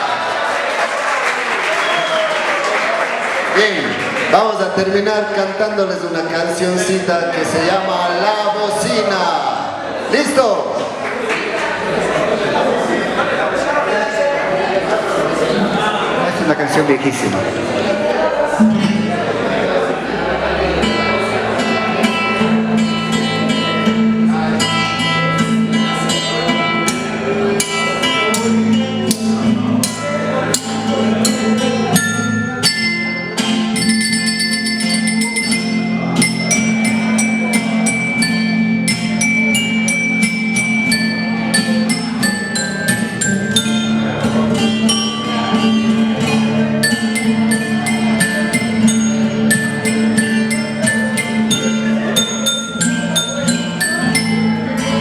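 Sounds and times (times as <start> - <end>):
sustained low drone note: 18.7 - 21.8
bright ringing tuned notes: 27.0 - 55.0.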